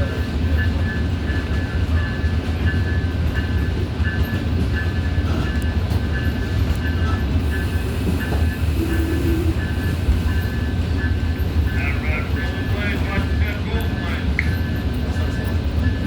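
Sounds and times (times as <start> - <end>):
train rumbling: 0.0 - 16.0.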